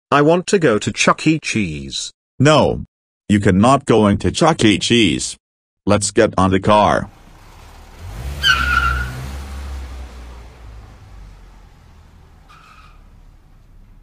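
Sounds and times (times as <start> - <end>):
car engine rumble: 7.0 - 14.0
tyre screech: 7.9 - 9.8, 11.8 - 13.6.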